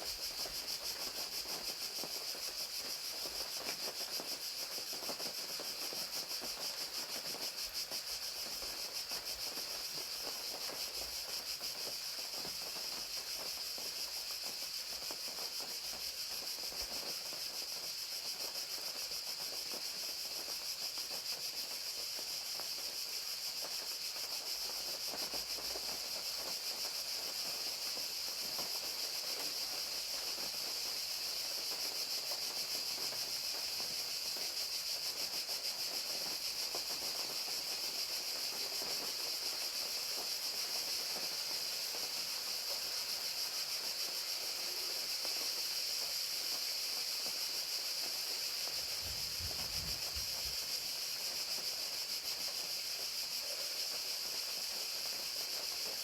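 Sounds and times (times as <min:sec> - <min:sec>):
crickets chirping: 0:00.0 - 0:56.0
rain falling: 0:47.2 - 0:52.7.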